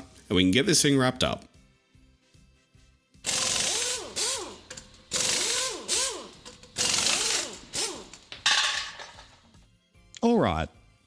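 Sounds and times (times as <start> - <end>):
impact wrench whining: 3.3 - 9.4.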